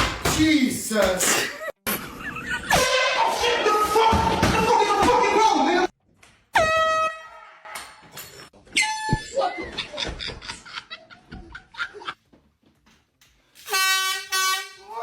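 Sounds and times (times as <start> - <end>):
people laughing: 1.6 - 3.8, 9.3 - 12.2
air horn blast: 13.6 - 15.0.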